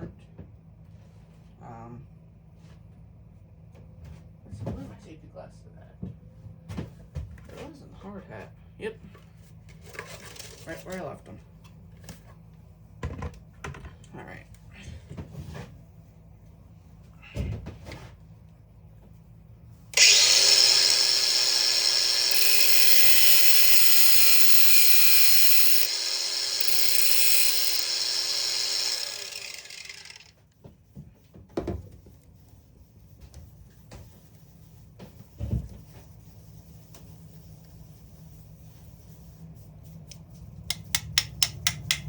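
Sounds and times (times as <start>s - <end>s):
handheld power tool running: 20.0s - 30.3s.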